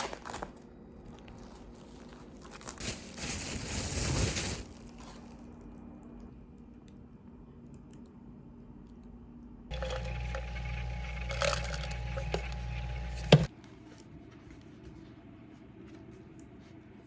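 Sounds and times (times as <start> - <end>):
electric appliance humming: 9.7 - 13.5.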